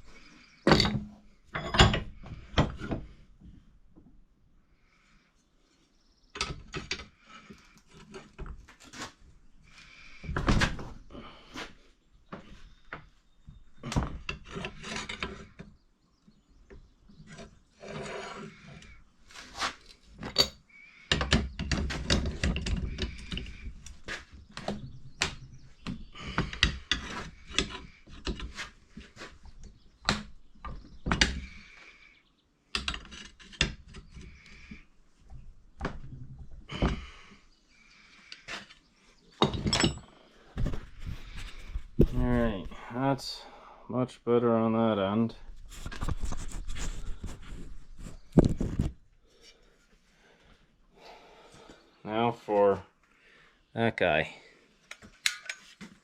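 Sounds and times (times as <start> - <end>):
scraping and rubbing on metal: 14.2 - 15.6, 17.1 - 20.1, 21.8 - 25.0, 45.4 - 49.9.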